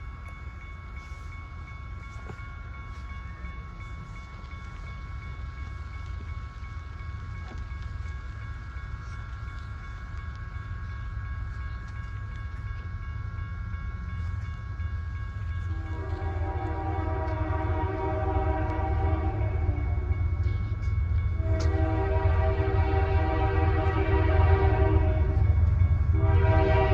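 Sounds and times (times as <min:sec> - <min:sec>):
high steady ringing: 0:00.0 - 0:26.9
locomotive engine rumble: 0:00.0 - 0:26.9
locomotive air horn chord: 0:15.6 - 0:20.2, 0:21.4 - 0:25.5, 0:26.1 - 0:26.9.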